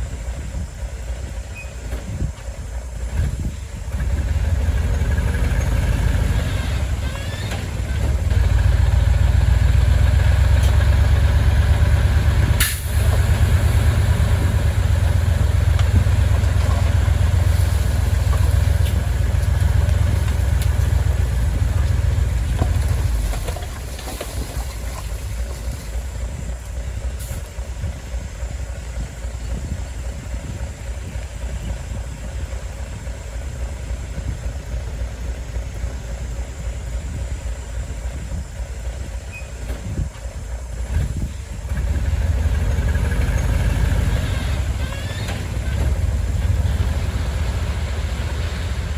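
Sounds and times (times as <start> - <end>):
diesel engine rumbling: 0.0 - 48.9.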